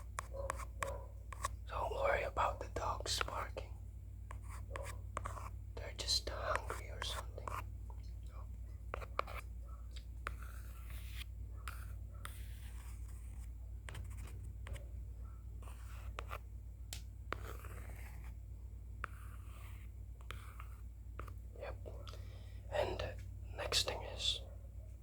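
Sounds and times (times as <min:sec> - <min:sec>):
scratchy drawing strokes: 0:00.0 - 0:03.6, 0:04.3 - 0:07.7, 0:08.9 - 0:16.5, 0:17.3 - 0:21.8
steady low hum: 0:00.0 - 0:25.0.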